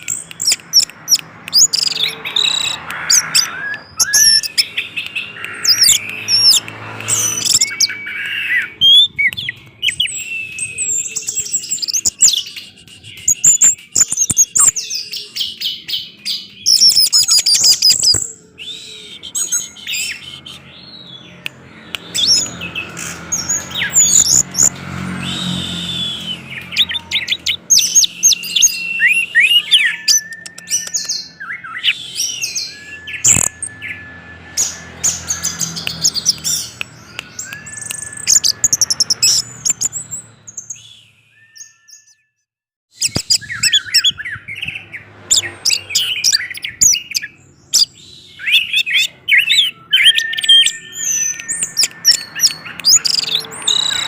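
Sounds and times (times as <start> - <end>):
thrush singing: 0.0 - 41.0.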